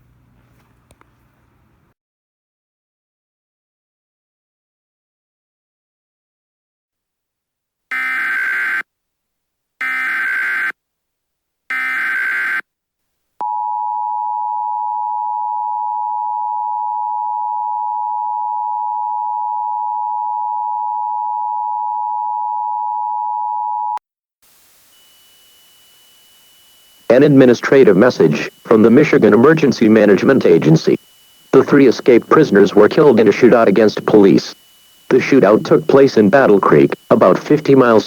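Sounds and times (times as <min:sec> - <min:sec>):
screechy digital data bursts: 0:07.9 - 0:08.8, 0:11.7 - 0:12.6, 0:25.0 - 0:38.0
two-tone attention signal: 0:31.6 - 0:38.0.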